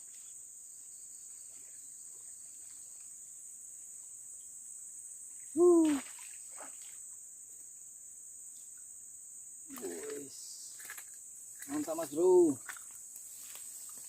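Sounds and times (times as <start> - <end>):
insects shrilling: 5.0 - 7.5, 8.4 - 14.0.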